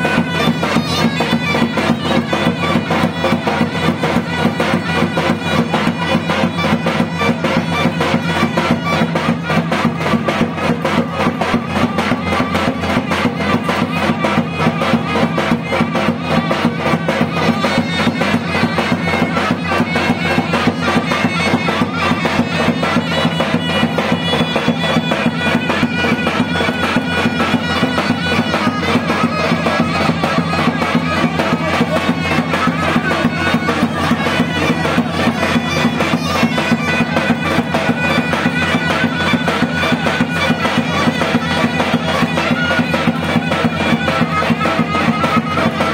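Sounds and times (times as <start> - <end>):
fast drum beat: 0.0 - 45.9
shrill reed-pipe folk tune: 0.0 - 45.9.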